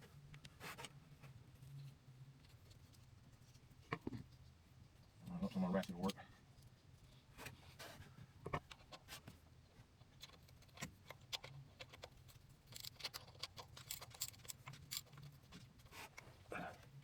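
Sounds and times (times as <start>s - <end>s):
small parts clicking and scraping: 10.2s - 16.3s.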